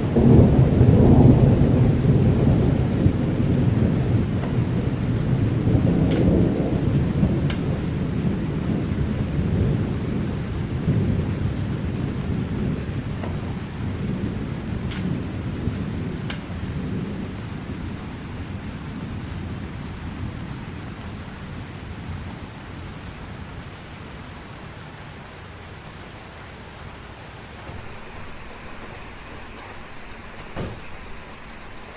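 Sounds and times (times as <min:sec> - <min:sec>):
low roll of thunder: 0:00.0 - 0:23.0, 0:27.7 - 0:31.9
rain falling: 0:00.0 - 0:31.9
water drips: 0:27.8 - 0:31.9.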